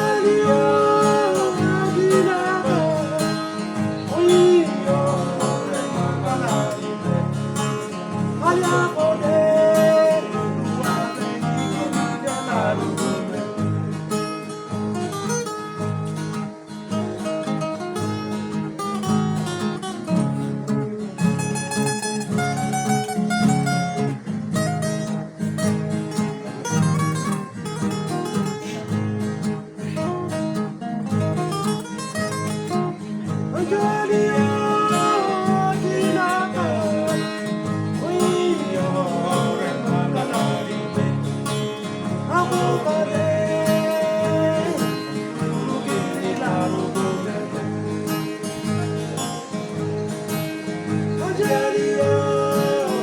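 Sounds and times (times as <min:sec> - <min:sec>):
person singing: 0:00.0 - 0:13.5, 0:33.5 - 0:53.0
acoustic guitars strumming: 0:00.0 - 0:53.0.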